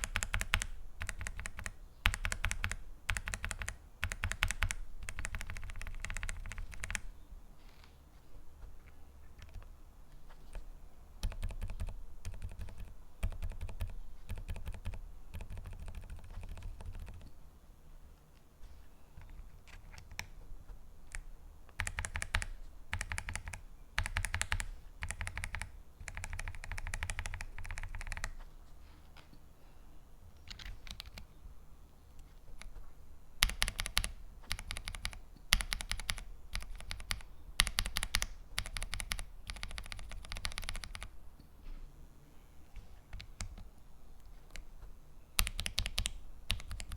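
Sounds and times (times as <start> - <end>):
mechanical keyboard typing: 0.0 - 7.1, 9.4 - 9.7, 10.4 - 17.3, 19.3 - 20.4, 21.1 - 28.4, 30.4 - 31.3, 33.4 - 41.1, 45.4 - 46.9.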